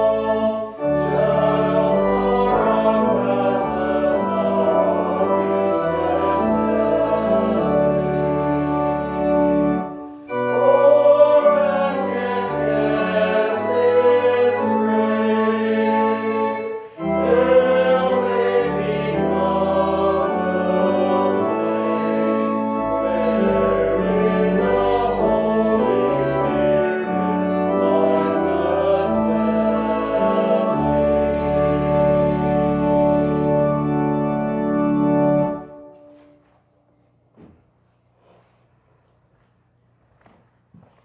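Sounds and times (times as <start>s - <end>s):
voices singing a hymn: 0.0s - 36.0s
organ chords: 0.0s - 36.3s.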